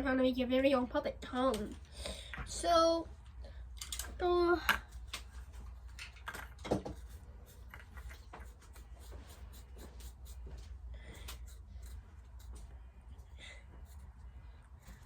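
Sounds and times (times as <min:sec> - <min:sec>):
marker scratching on felt: 0:06.9 - 0:10.5, 0:11.2 - 0:12.7.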